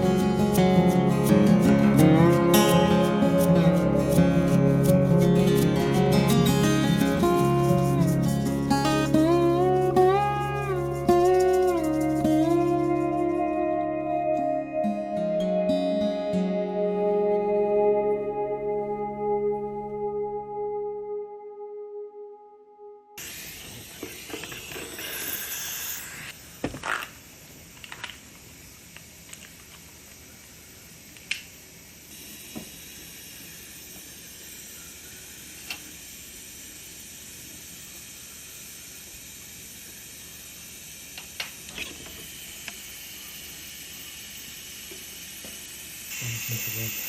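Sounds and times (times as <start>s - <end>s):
steady hiss: 0.0s - 13.6s, 23.2s - 47.0s.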